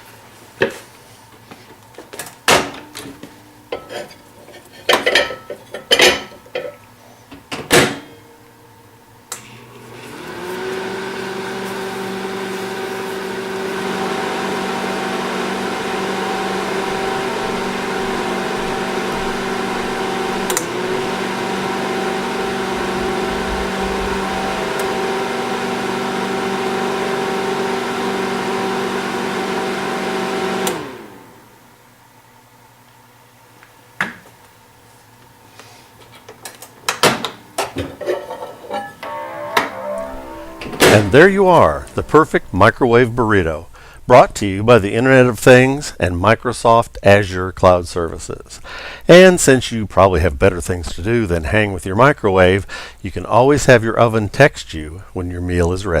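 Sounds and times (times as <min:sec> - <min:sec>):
microwave oven humming: 0:00.0 - 0:35.4, 0:36.2 - 0:44.0.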